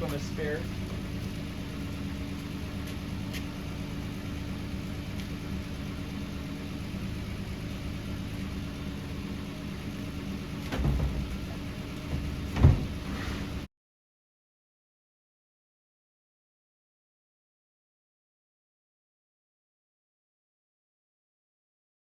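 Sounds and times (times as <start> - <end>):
engine idling: 0.0 - 13.7
low thump: 10.7 - 13.1.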